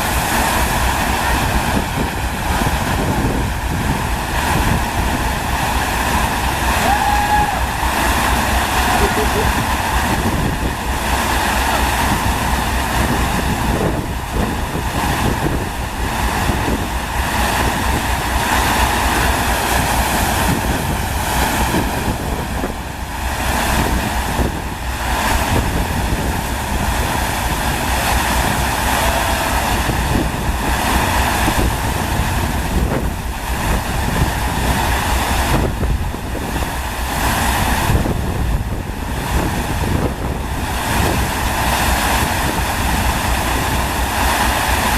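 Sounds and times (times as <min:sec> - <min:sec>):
sheet of water rushing: 0:00.0 - 0:44.9
wind buffeting microphone: 0:00.0 - 0:44.9.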